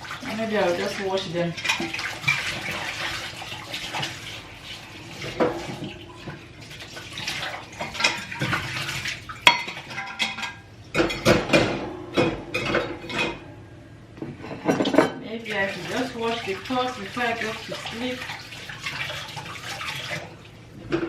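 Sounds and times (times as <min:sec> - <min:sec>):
water running: 0:00.0 - 0:11.5, 0:14.7 - 0:21.0
dishes clattering: 0:07.8 - 0:08.8, 0:09.4 - 0:13.5, 0:14.2 - 0:15.2.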